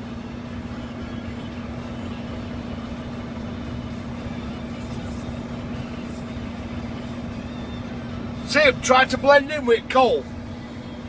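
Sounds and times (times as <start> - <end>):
steady mechanical hum: 0.0 - 11.0.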